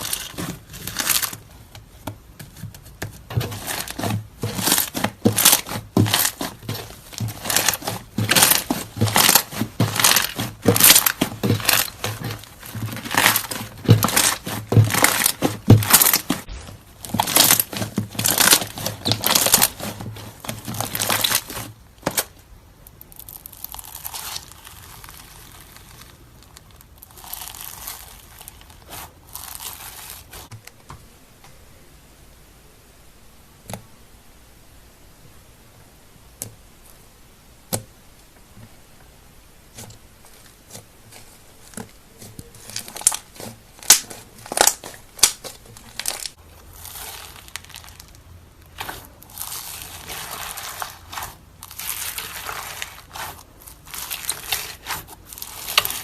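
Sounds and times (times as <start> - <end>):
slime crackling and popping: 0.0 - 1.5, 3.3 - 30.5, 41.7 - 56.0.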